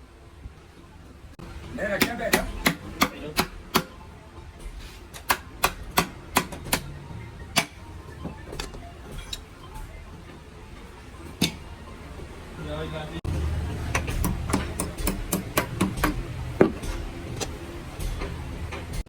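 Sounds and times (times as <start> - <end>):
hammer taps: 13.9 - 18.2.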